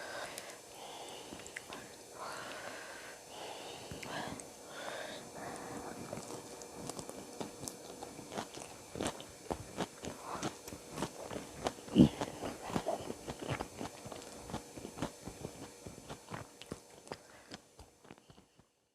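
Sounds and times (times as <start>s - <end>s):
chewing and crunching food: 1.2s - 2.0s, 5.2s - 18.7s.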